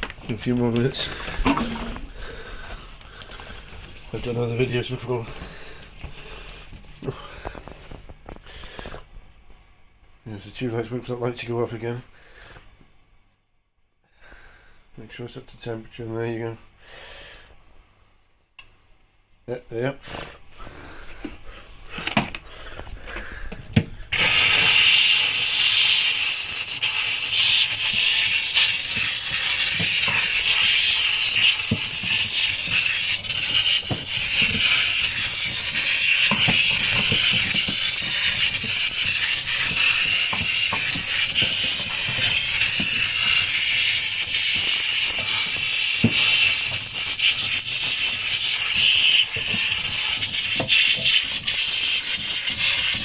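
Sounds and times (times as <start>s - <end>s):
steam cleaner hissing: 1.0s - 2.6s, 24.1s - 53.0s.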